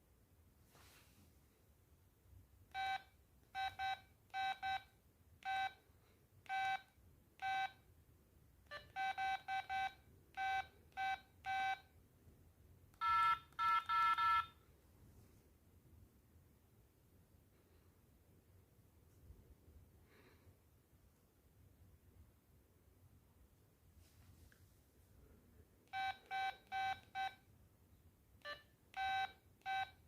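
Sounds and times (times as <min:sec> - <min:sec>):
phone key beeps: 0:08.7 - 0:11.8, 0:13.0 - 0:14.6, 0:25.9 - 0:27.4, 0:28.4 - 0:30.0.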